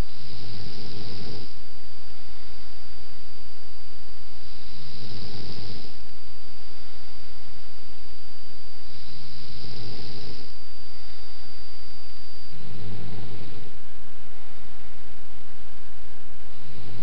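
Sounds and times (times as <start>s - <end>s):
steady hiss: 0.0s - 17.0s
person snoring: 12.5s - 13.8s.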